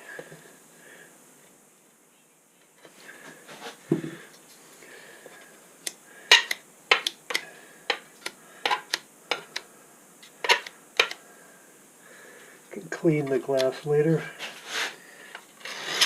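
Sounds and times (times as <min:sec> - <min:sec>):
metal and glass clicks and taps: 0:10.4 - 0:11.2.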